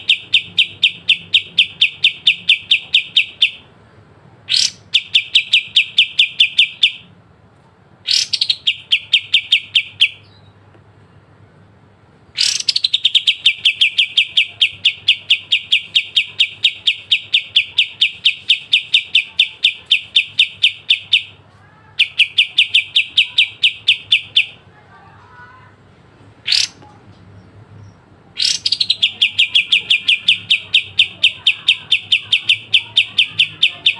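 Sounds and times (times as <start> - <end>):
songbird clicking song: 28.4 - 33.9.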